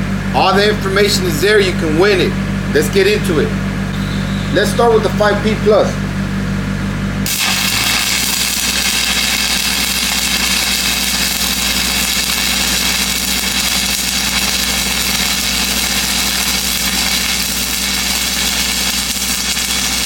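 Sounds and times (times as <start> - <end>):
welding machine low hum: 0.0 - 20.0
man talking: 0.3 - 3.6, 4.5 - 6.0
welding arc crackling hiss: 7.2 - 20.0.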